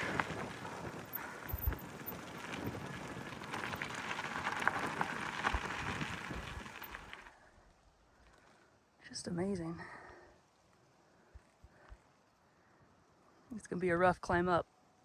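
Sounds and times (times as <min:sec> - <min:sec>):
bike tyres crunching on gravel: 0:00.0 - 0:07.4
low bumps from ruts: 0:00.0 - 0:07.6.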